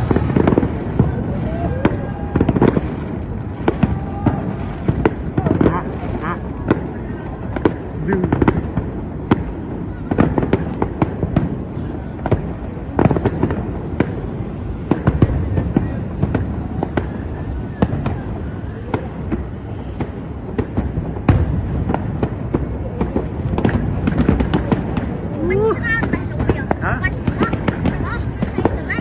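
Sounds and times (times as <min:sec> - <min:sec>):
fireworks bangs and cracks: 0:00.0 - 0:29.0.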